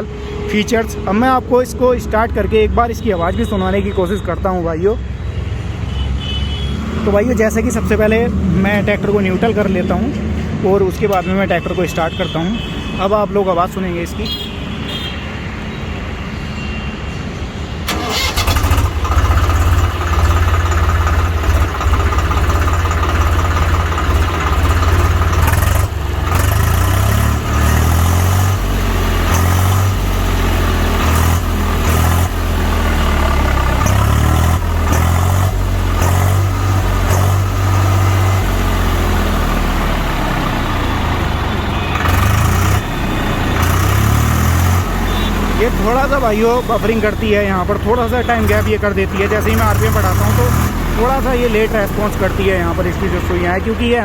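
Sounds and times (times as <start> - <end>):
starter cranking: 17.9 - 28.0
tractor diesel engine running: 17.9 - 54.0.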